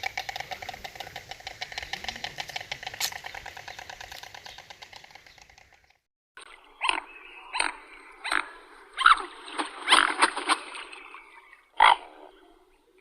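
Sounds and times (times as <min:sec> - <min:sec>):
background bird calls: 0:00.0 - 0:13.0
bird harsh croaking calls: 0:00.0 - 0:13.0.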